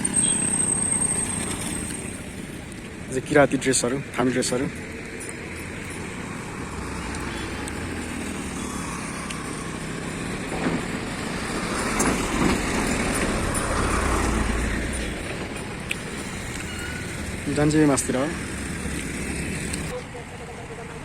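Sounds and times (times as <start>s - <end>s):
road traffic rumble: 0.0s - 21.0s
vehicle passing close: 5.1s - 19.9s.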